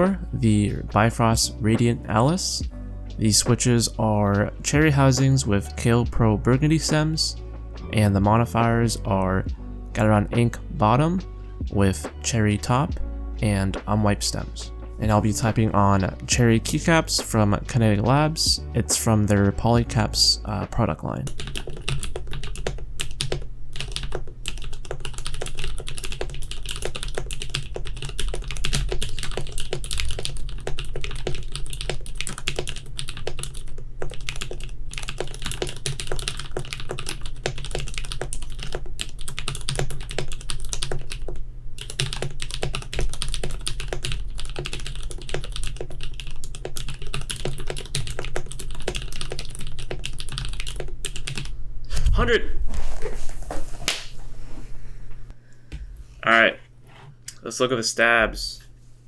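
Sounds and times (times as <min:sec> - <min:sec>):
fast typing on mechanical keyboard: 0:21.3 - 0:51.5.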